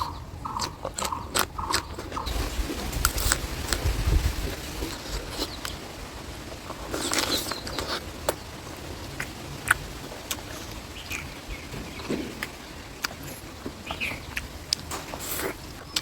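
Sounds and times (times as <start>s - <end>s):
chewing with wet mouth clicks: 0.0s - 2.3s, 9.2s - 11.4s.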